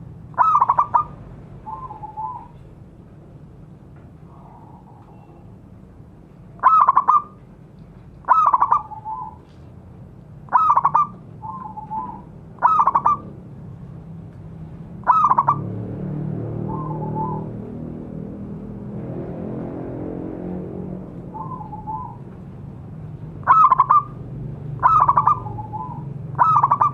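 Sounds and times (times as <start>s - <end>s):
dove cooing: 0.4s - 2.7s, 4.3s - 5.5s, 6.6s - 7.4s, 8.3s - 9.5s, 10.5s - 13.3s, 15.0s - 15.6s, 21.3s - 22.3s, 23.4s - 24.2s, 24.8s - 26.9s.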